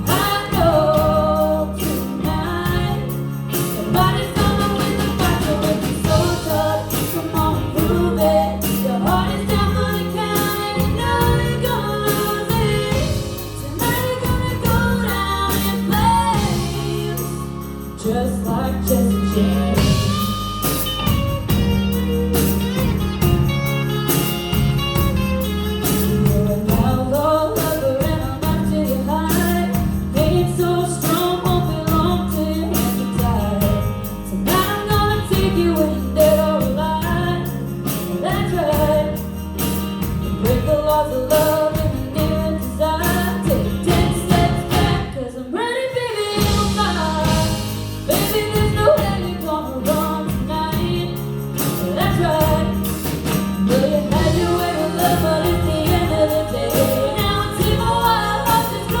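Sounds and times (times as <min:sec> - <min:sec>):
woman singing: 0:00.0 - 0:23.4, 0:25.6 - 0:59.0
band accompaniment: 0:00.0 - 0:59.0.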